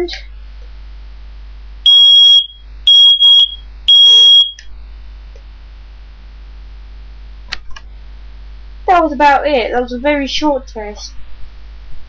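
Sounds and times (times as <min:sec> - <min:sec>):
smoke alarm high-pitched beeps: 0:01.9 - 0:04.7.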